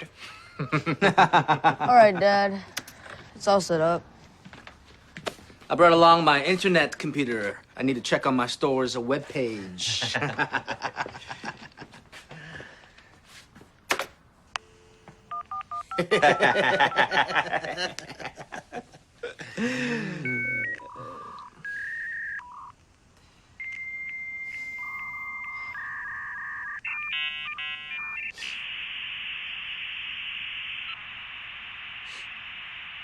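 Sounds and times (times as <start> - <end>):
dial-up modem dialing and connecting: 13.9 - 17.5, 20.2 - 22.8, 23.6 - 28.9.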